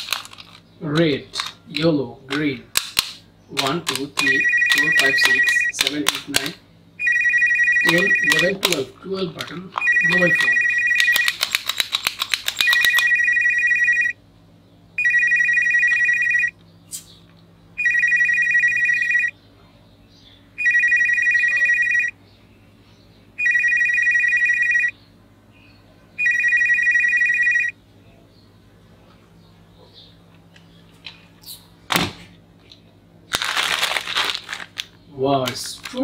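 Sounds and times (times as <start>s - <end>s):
toy phone electronic ringtone: 4.2s - 5.9s, 7.0s - 8.8s, 9.8s - 11.6s, 12.5s - 14.2s, 15.0s - 16.5s, 17.8s - 19.3s, 20.6s - 22.1s, 23.4s - 24.9s, 26.2s - 27.7s.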